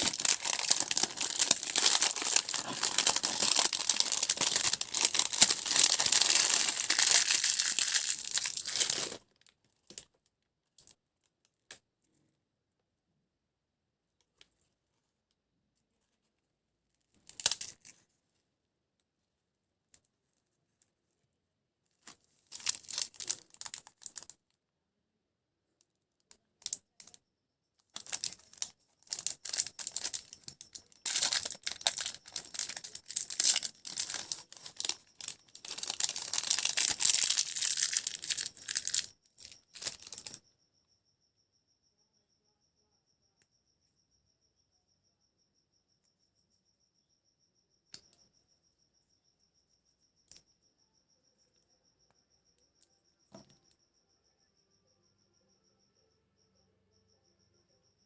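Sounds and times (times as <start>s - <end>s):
plastic wrapper crinkling: 0.0s - 9.2s, 22.5s - 24.2s, 28.0s - 40.4s.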